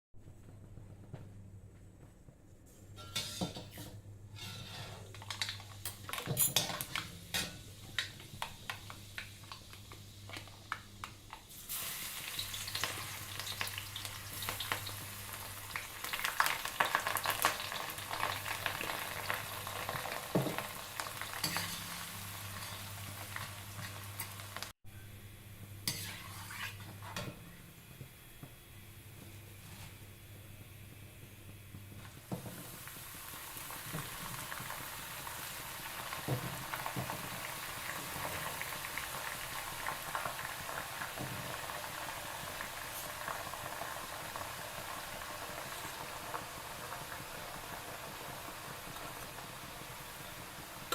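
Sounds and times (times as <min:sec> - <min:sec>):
spoon scraping a pan: 0:03.0 - 0:05.2, 0:21.4 - 0:23.0, 0:25.8 - 0:27.5
food sizzling in a pan: 0:03.0 - 0:24.8, 0:25.6 - 0:28.4, 0:29.4 - 0:50.9.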